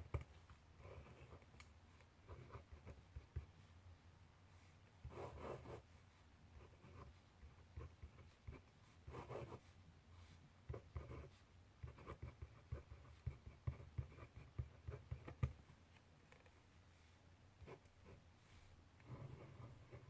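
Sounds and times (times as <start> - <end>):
handwriting scratching on paper: 0.8 - 3.6, 5.0 - 5.9, 6.6 - 15.5.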